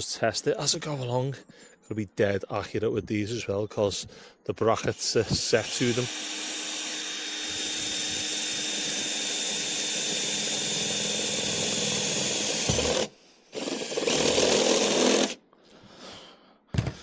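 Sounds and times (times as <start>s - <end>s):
power drill boring through steel: 5.3s - 15.4s.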